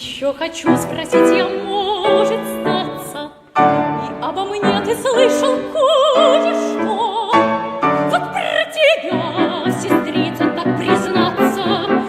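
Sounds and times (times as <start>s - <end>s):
soprano singing with vibrato: 0.0s - 12.0s
piano accompaniment: 0.6s - 12.0s.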